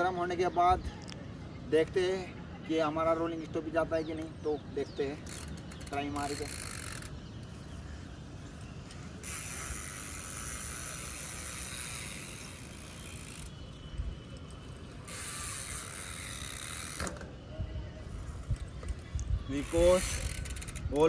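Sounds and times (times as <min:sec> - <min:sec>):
bicycle freewheel ticking: 0:05.2 - 0:07.6, 0:08.5 - 0:17.1, 0:18.3 - 0:21.0.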